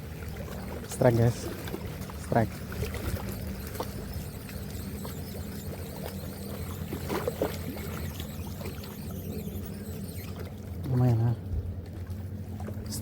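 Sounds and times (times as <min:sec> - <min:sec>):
low engine hum: 0:00.0 - 0:13.0
water: 0:00.0 - 0:13.0
short squeaks: 0:02.1 - 0:10.7.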